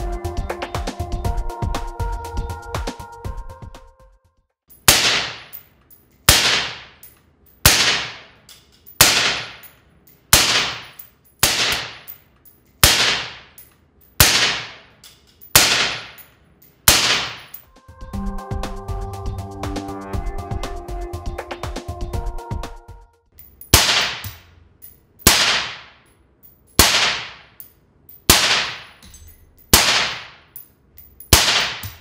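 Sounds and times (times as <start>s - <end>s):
suppressed rifle shots: 4.9s - 5.5s, 6.3s - 6.9s, 7.6s - 8.3s, 9.0s - 9.6s, 10.3s - 12.1s, 12.8s - 13.5s, 14.2s - 14.8s, 15.6s - 16.2s, 16.9s - 17.5s, 25.3s - 25.9s, 26.8s - 27.4s, 28.3s - 28.9s, 29.7s - 30.4s, 31.3s - 32.0s.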